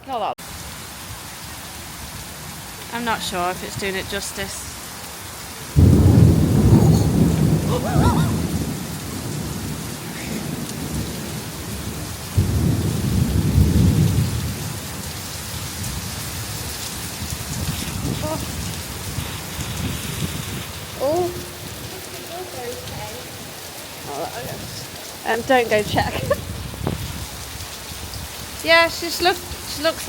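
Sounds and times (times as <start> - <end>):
heavy rain falling: 0.4 - 30.0
thunder rumbling: 5.8 - 27.6.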